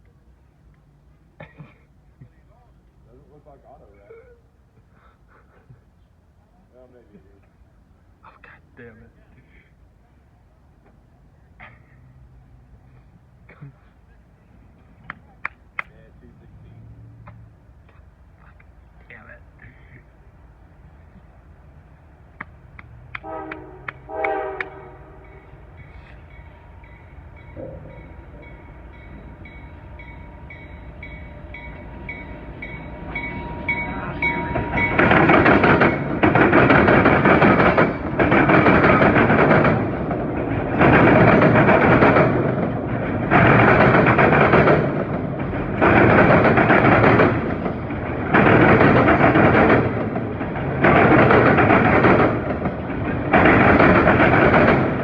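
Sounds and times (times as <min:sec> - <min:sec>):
freight train rumbling past: 0:06.2 - 0:55.0
train horn blasts: 0:23.2 - 0:35.0.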